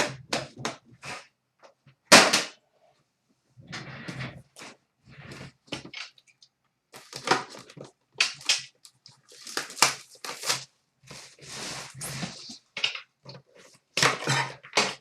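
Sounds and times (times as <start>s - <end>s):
wrapper crinkling and tearing: 7.0s - 10.7s.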